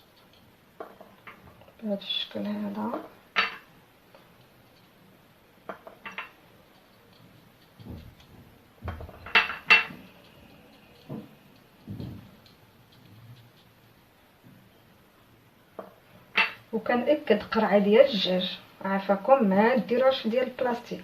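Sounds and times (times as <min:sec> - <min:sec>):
soft knocks: 0:11.1 - 0:12.3.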